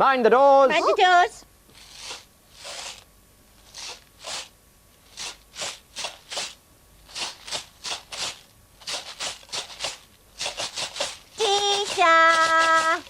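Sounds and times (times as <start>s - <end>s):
peas rattling in shaker: 5.1s - 13.0s.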